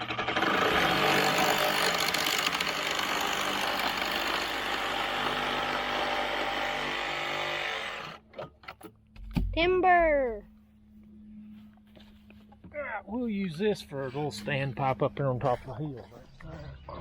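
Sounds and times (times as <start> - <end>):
power saw cutting pipe: 0.0 - 8.2.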